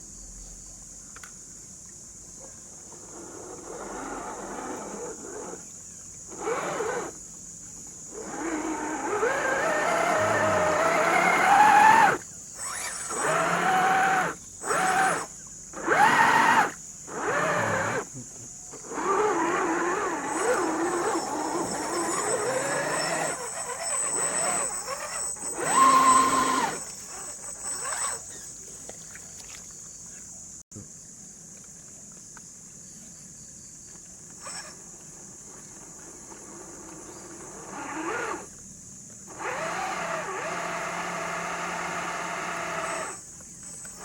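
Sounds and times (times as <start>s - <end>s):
small electric motor whining: 2.9s - 7.4s, 8.0s - 29.0s, 34.3s - 38.6s, 39.2s - 44.0s.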